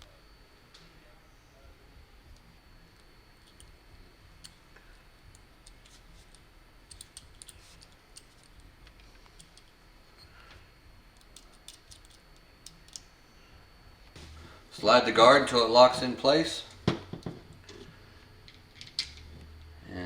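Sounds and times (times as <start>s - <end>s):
faint high whine: 0.0s - 20.0s
small metal parts clicking: 5.6s - 9.8s, 11.2s - 13.1s.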